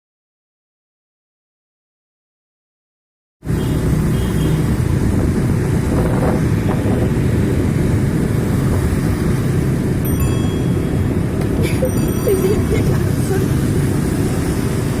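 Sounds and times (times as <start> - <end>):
vehicle road and engine rumble: 3.4 - 15.0.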